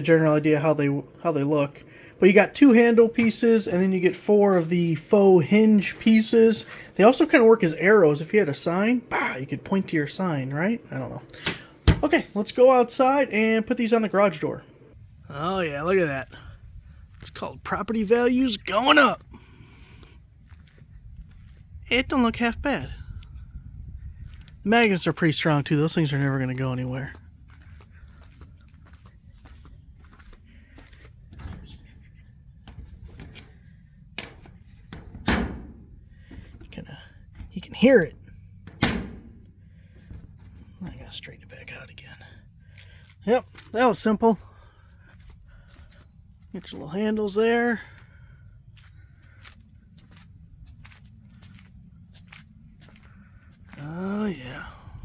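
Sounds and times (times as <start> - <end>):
crickets chirping: 0.0 - 55.0
magnet snapping onto steel door: 34.2 - 35.8, 38.7 - 39.4.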